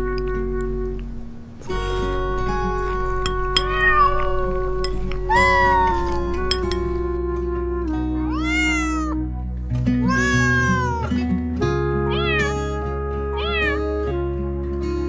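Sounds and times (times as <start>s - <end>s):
background music: 0.0s - 15.0s
cat meowing: 3.6s - 7.1s, 8.3s - 9.3s, 10.0s - 11.2s, 12.1s - 12.7s, 13.3s - 13.8s.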